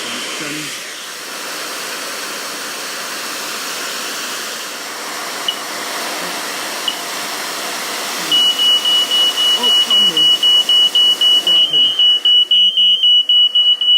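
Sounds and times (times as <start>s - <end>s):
hair dryer blowing: 0.0s - 13.9s
alarm high chirps: 8.3s - 13.9s.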